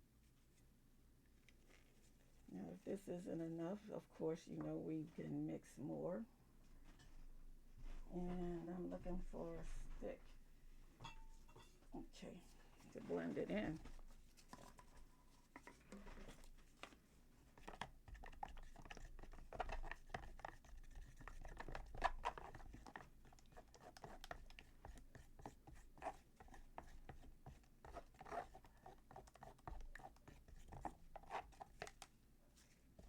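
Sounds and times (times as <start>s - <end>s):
stick scraping wet plaster: 17.6s - 32.0s.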